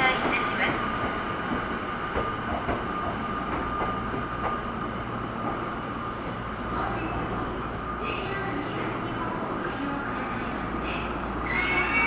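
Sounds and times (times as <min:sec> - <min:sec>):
electric train whine: 0:00.0 - 0:12.0.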